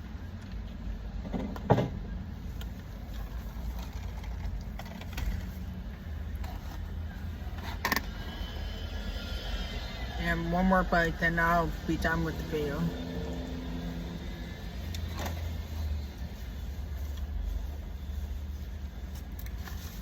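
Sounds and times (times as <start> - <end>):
car engine idling: 10.1 - 20.0.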